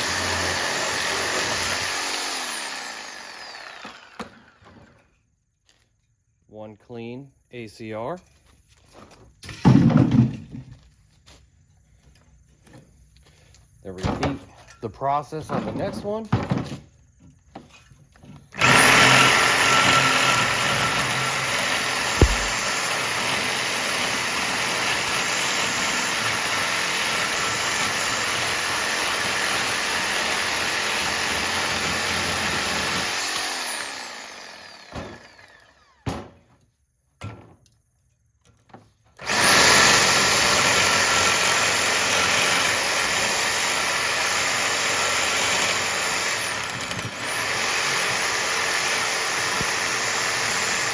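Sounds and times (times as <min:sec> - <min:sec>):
reciprocating saw cutting metal: 0:00.0 - 0:04.6, 0:18.6 - 0:36.0, 0:39.2 - 0:50.9
short knocks: 0:22.2 - 0:22.7.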